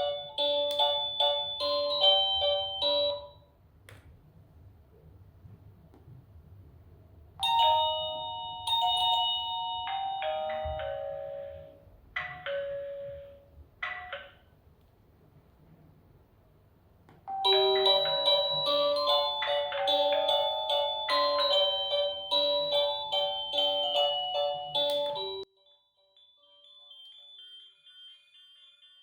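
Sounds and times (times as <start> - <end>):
doorbell chime melody: 0.0 - 3.5, 7.4 - 14.3, 17.3 - 29.0.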